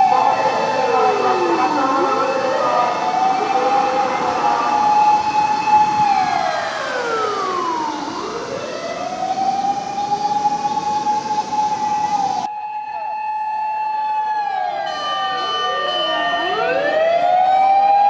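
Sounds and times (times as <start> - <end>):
fire truck motor siren: 0.0 - 18.0.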